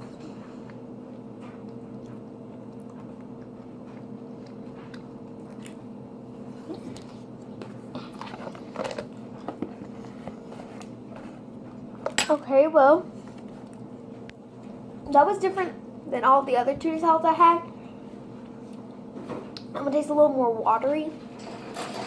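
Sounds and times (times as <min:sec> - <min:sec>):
person chewing food: 0:00.0 - 0:12.2
steady low hum: 0:00.0 - 0:22.0.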